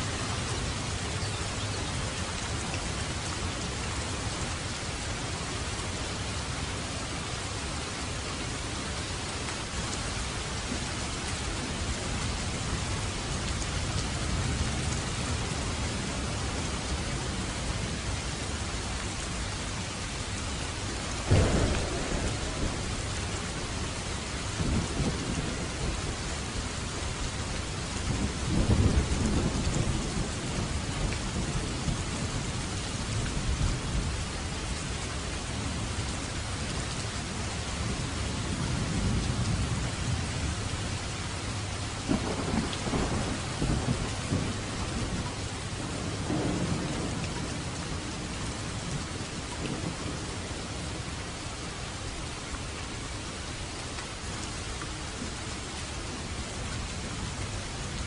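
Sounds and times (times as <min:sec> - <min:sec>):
heavy rain: 0:00.0 - 0:58.0
rolling thunder rumbles: 0:21.2 - 0:34.8, 0:37.8 - 0:40.9, 0:42.0 - 0:51.1
thunder clap: 0:21.3 - 0:26.0.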